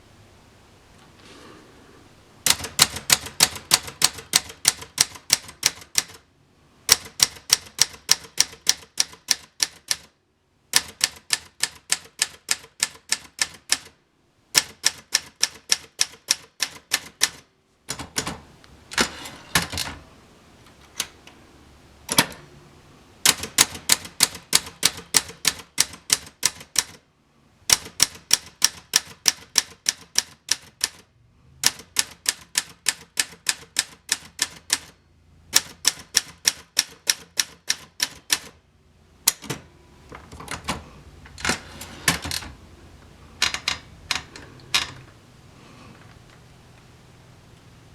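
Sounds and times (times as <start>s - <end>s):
typewriter key strikes: 2.4s - 6.2s, 6.9s - 10.1s, 10.7s - 13.9s, 14.6s - 18.4s, 23.2s - 27.0s, 27.7s - 31.0s, 35.5s - 38.5s.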